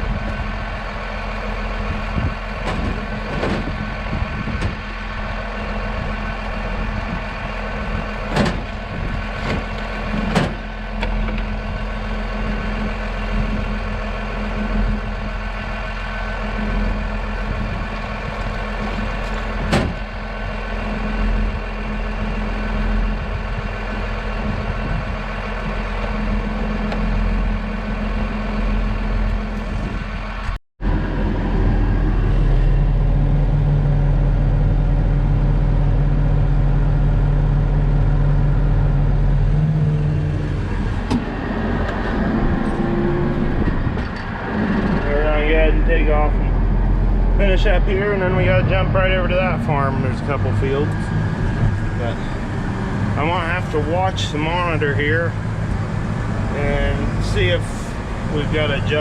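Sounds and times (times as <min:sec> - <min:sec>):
engine running steadily: 0:00.0 - 0:59.0
sharp knocks: 0:08.3 - 0:08.8.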